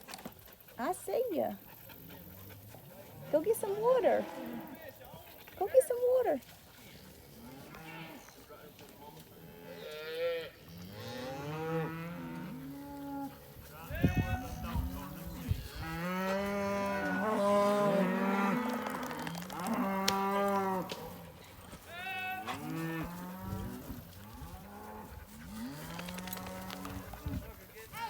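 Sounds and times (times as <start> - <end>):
cattle mooing and bawling: 9.6 - 13.4, 14.2 - 21.4, 22.2 - 27.4.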